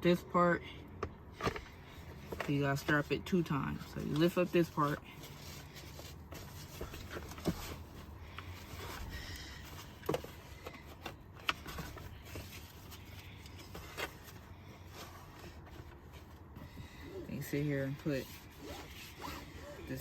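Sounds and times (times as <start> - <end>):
low steady hum: 0.0 - 20.0.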